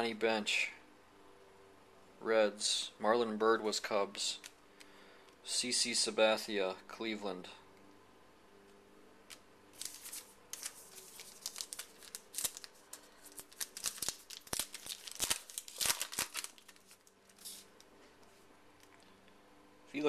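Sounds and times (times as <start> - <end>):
card packaging crinkling: 9.3 - 17.8.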